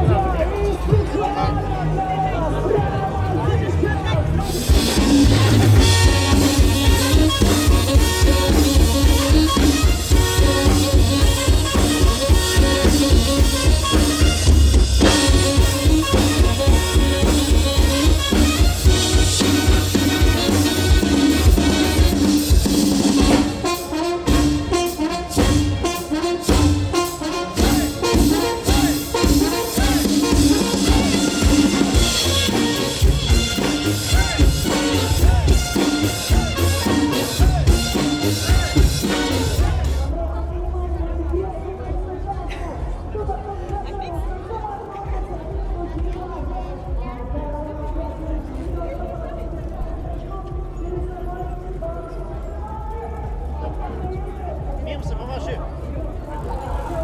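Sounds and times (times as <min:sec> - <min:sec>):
brass instruments: 0:00.0 - 0:40.2
drum kit playing a steady beat: 0:04.4 - 0:40.1.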